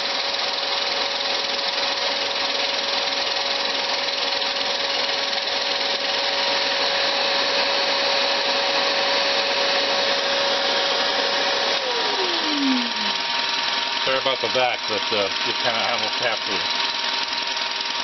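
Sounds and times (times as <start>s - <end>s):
milling machine grinding stone: 0.0s - 18.0s
spindle whine: 5.9s - 16.5s.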